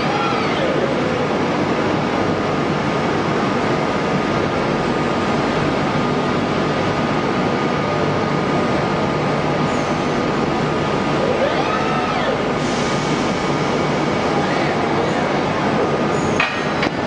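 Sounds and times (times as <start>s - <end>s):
machine running with high tone: 0.0s - 1.5s, 7.7s - 16.4s.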